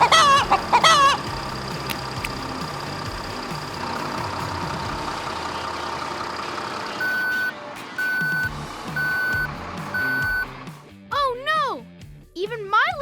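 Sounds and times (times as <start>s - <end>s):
engine hum: 0.0s - 11.1s
electronic warning beep: 7.0s - 10.5s.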